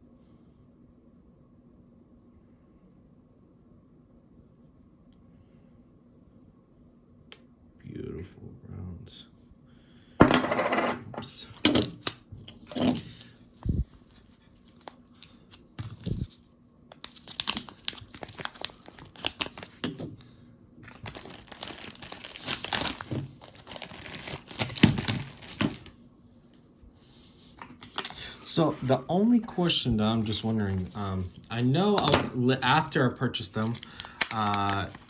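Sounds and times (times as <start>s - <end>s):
packaging crinkling and rustling: 14.1s - 20.2s, 20.8s - 26.0s, 27.6s - 35.0s.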